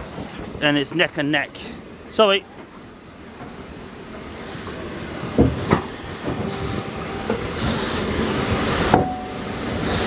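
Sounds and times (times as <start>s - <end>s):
steam locomotive hissing steam: 3.0s - 10.0s
sharp metallic knocks: 6.4s - 9.4s.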